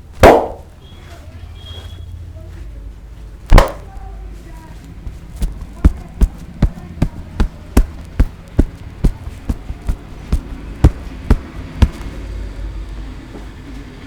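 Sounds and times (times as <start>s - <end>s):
hands slapping in massage: 3.5s - 3.8s, 5.1s - 12.2s.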